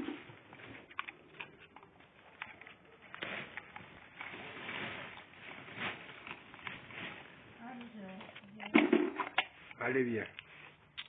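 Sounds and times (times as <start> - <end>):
dog cracking walnut shells: 0.0 - 4.3.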